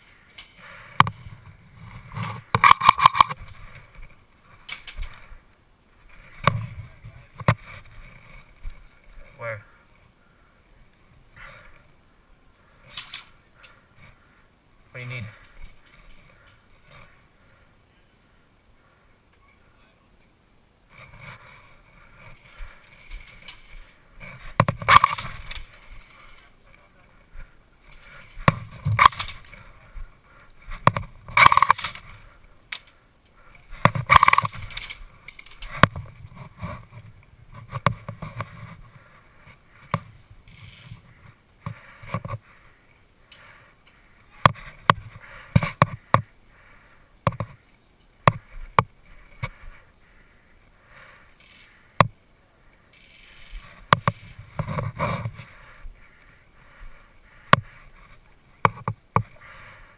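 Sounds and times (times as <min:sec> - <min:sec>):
rustling and scraping through brush: 0:00.0 - 0:09.5, 0:20.9 - 0:50.4, 0:52.7 - 0:59.5.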